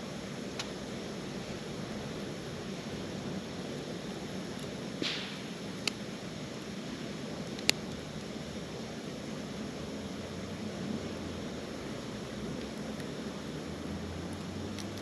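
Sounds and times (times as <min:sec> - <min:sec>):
wood fire hissing: 0:00.0 - 0:15.0
fire crackling pops: 0:00.1 - 0:09.6.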